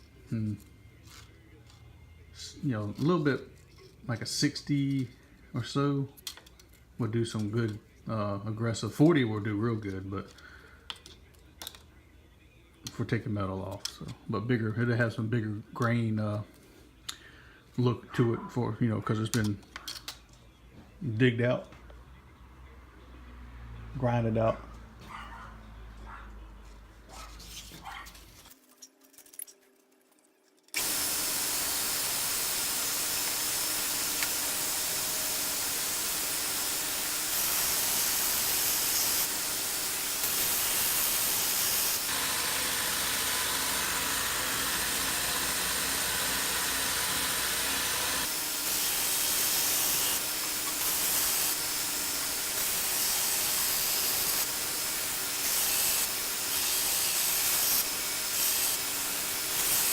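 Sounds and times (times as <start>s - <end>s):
belt sander grinding steel: 30.8s - 59.9s.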